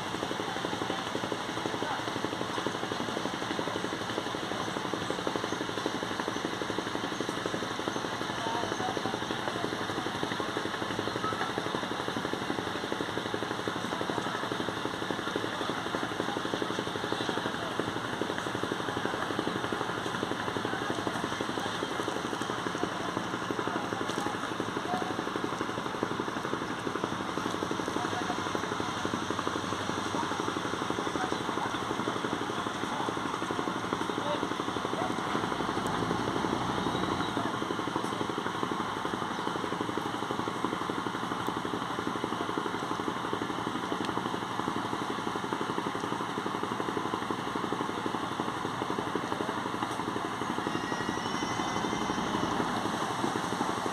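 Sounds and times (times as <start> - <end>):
boat diesel engine drone: 0.0 - 53.9.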